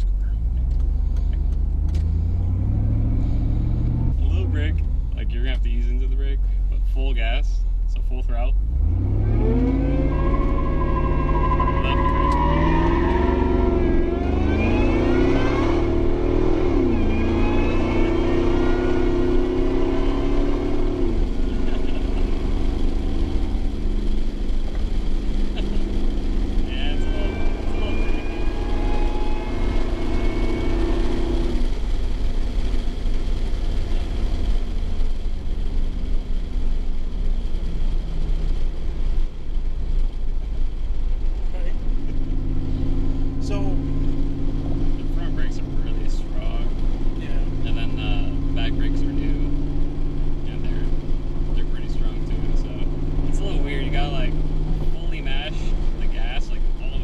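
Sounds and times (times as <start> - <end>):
supercharger whine: 0.0 - 39.2, 41.5 - 57.0
engine at full throttle: 8.6 - 36.6, 41.6 - 57.0.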